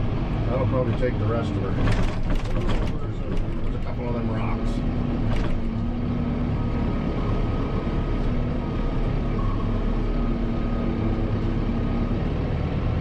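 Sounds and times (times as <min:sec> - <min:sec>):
tractor diesel engine running: 0:00.0 - 0:13.0.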